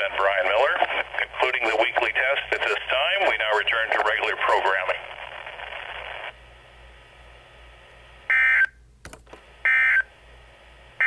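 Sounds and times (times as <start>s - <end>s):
radio hiss: 0.0s - 6.4s.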